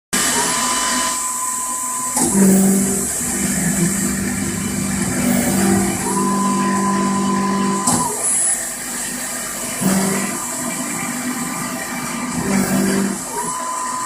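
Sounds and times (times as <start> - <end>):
milling machine high whine: 0.2 - 14.0
lower steady hum: 1.9 - 8.0.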